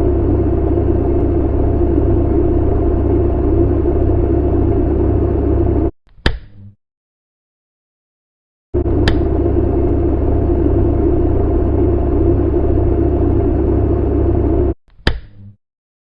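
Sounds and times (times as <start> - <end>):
faint steady hum: 0.0 - 5.9, 8.8 - 14.8
fan running: 0.0 - 5.9, 8.8 - 14.8
sharp click: 6.1 - 6.7, 9.0 - 9.3.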